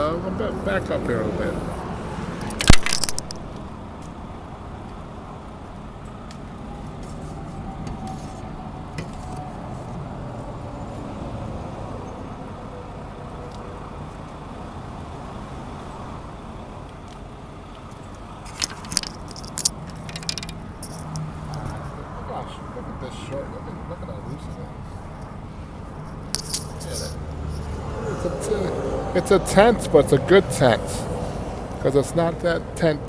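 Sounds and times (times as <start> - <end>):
vehicle rumble: 0.0 - 33.0
sharp knocks and clicks: 18.5 - 21.8.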